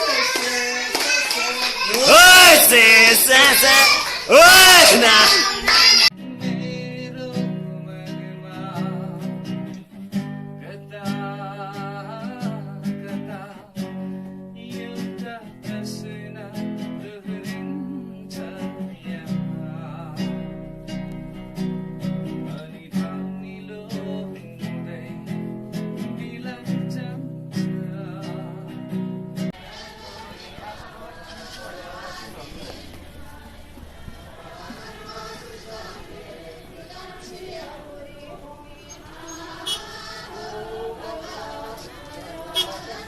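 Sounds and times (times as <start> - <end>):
strummed acoustic guitar: 0.1 - 29.6.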